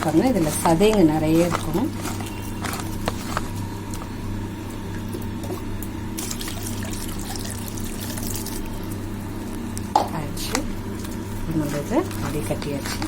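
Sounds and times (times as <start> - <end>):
liquid trickling through a strainer: 6.2 - 9.0.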